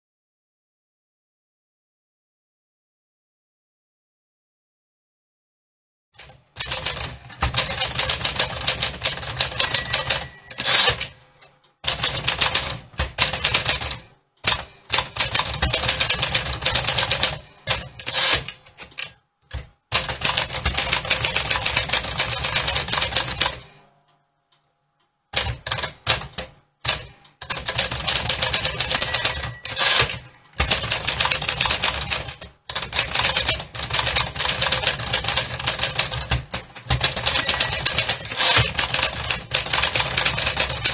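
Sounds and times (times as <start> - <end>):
typewriter key strikes: 6.2 - 11.3, 25.3 - 40.9
typewriter carriage return: 6.2 - 23.7, 25.3 - 40.9
typewriter margin bell: 6.7 - 18.5, 27.5 - 36.4, 37.0 - 40.9.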